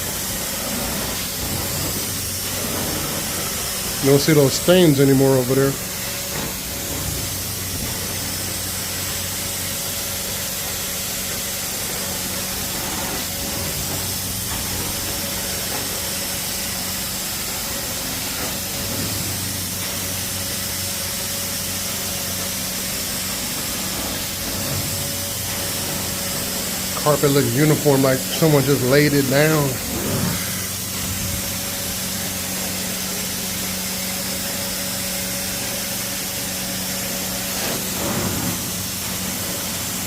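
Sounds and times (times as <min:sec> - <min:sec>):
carpet extraction machine running: 0:00.0 - 0:40.0.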